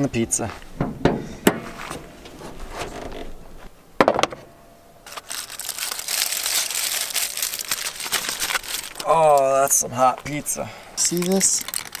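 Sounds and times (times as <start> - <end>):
wrapping crinkling: 5.0 - 9.5, 11.0 - 12.0.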